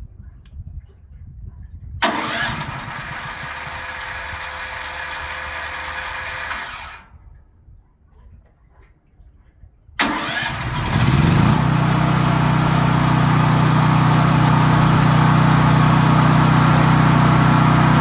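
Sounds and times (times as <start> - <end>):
generator engine starting and running: 2.0 - 7.2, 10.0 - 18.0.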